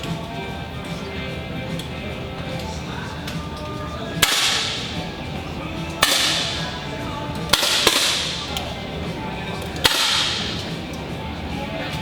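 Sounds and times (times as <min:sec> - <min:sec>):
air rifle shots: 0:04.2 - 0:05.0, 0:06.0 - 0:06.7, 0:07.5 - 0:08.4, 0:09.8 - 0:10.6.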